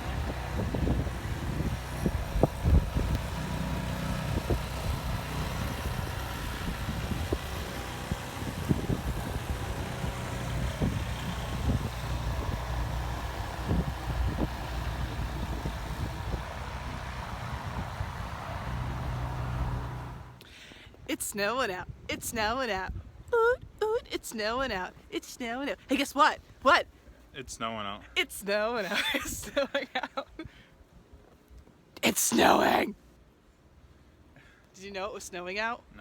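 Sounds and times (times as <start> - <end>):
vehicle engine humming: 0.0 - 20.4.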